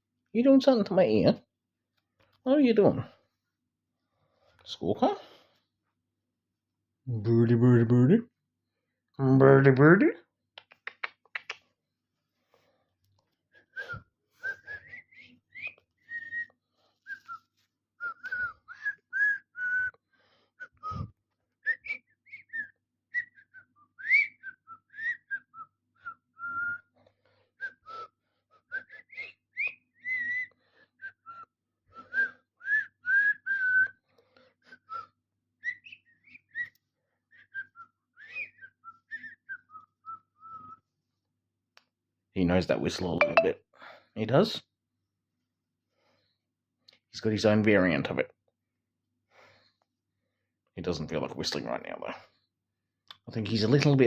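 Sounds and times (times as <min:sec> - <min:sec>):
person whistling a tune: 0:13.6 - 0:20.0, 0:20.6 - 0:26.9, 0:27.6 - 0:34.0, 0:43.2 - 0:43.5.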